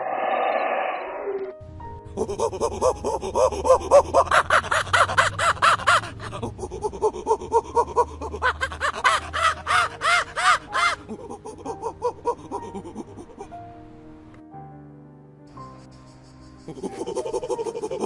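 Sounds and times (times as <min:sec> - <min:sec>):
monkey calling: 0:02.2 - 0:13.5.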